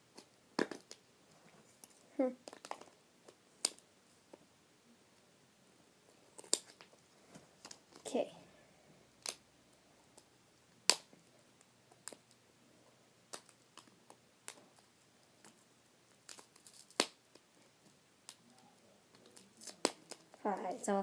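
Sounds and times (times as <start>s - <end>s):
plastic packaging crinkling: 16.1s - 17.4s.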